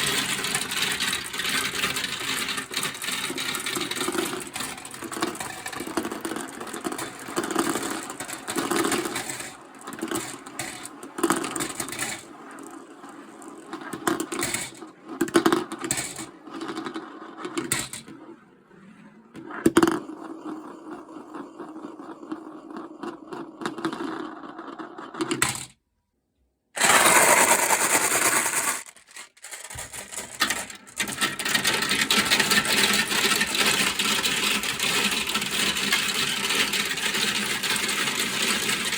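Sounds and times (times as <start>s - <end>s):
marbles rolling down plastic track: 0.0s - 25.7s, 26.8s - 38.9s.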